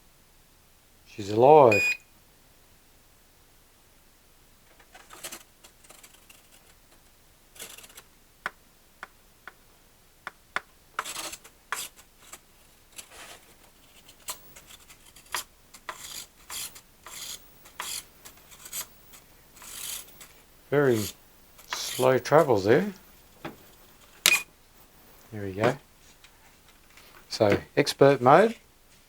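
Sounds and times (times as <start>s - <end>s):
servos buzzing: 15.9s - 25.3s.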